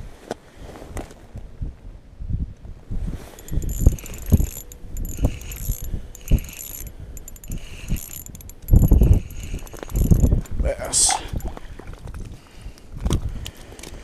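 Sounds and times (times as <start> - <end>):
fishing line rubbing strokes: 3.3 - 10.4.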